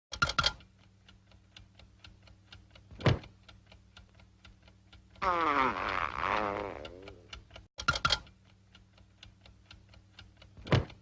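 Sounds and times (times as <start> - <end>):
steady fast ticking: 0.1 - 11.0
person snoring: 5.2 - 7.3.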